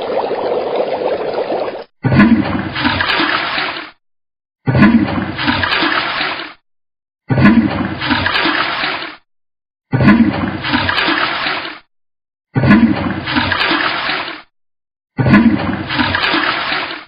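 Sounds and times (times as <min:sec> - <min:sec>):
water splashing and rushing: 0:00.0 - 0:04.0, 0:04.7 - 0:06.6, 0:07.3 - 0:09.2, 0:09.9 - 0:11.9, 0:12.6 - 0:14.5, 0:15.2 - 0:17.0.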